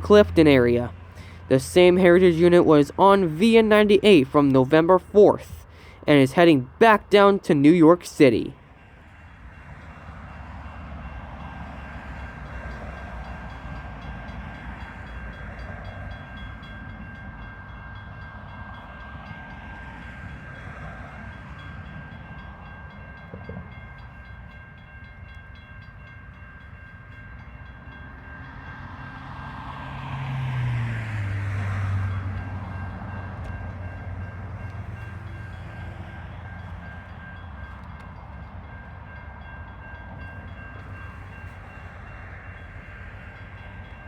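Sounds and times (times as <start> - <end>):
diesel engine: 0.0 - 8.5
freight train rumbling: 0.0 - 44.0.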